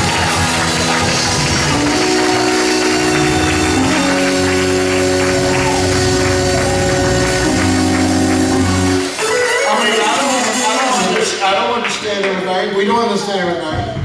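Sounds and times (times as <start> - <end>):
drums and tambourine beat: 0.0 - 10.2
live band playing praise music: 0.0 - 11.8.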